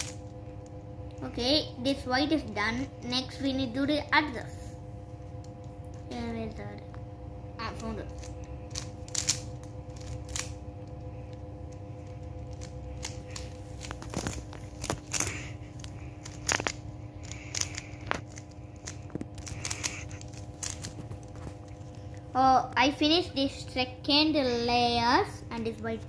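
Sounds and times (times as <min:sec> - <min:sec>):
steady hum: 0:00.0 - 0:26.0
puzzle cube clicking: 0:07.8 - 0:10.6, 0:12.0 - 0:21.0.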